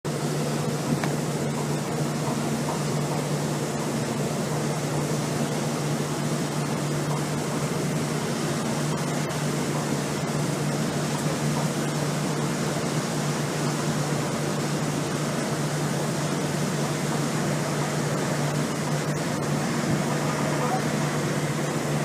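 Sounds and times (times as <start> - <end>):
ship engine low hum: 0.1 - 22.0.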